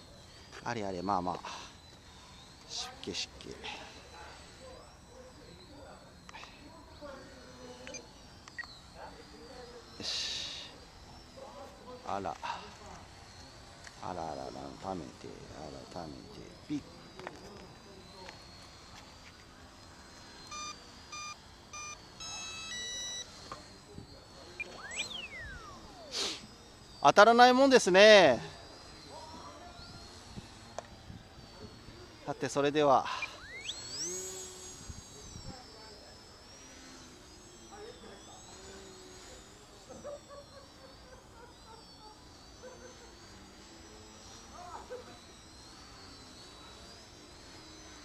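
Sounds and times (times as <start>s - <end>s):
electronic countdown beeps: 0.0s - 19.0s, 20.1s - 30.8s, 32.3s - 47.8s
faint high whine: 0.0s - 48.0s.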